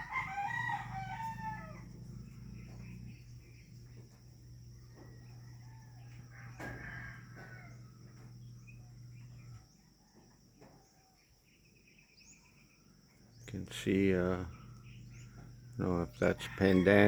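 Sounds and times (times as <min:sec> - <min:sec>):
low hum: 0:00.0 - 0:09.8, 0:13.4 - 0:16.5
high insect buzz: 0:00.0 - 0:09.9, 0:13.3 - 0:17.0.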